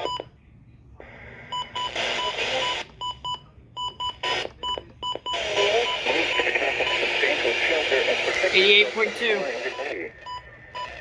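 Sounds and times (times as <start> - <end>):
radio hiss: 1.0 - 2.9, 5.3 - 11.0
radio station audio: 1.0 - 3.0, 4.2 - 11.0
radio keypad beeps: 1.6 - 7.5, 8.1 - 11.0.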